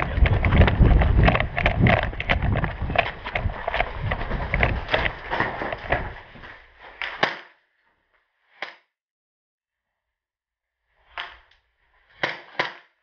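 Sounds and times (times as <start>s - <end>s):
gear rattling: 0.0s - 6.3s
running footsteps: 0.0s - 7.2s
sharp crack: 6.9s - 7.6s, 11.1s - 13.0s.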